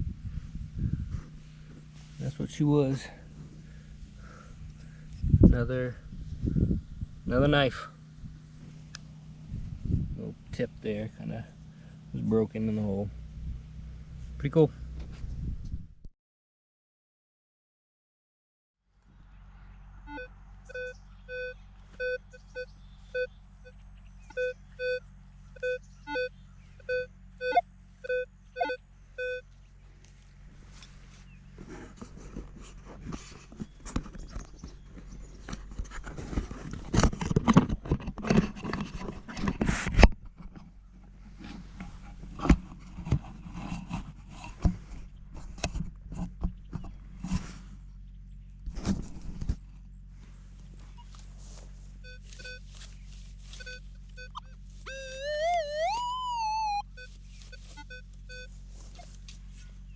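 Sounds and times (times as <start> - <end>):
metal detector beeps: 20.1 - 29.5, 52.0 - 52.8, 53.5 - 59.1
digging in soil: 28.6 - 59.9.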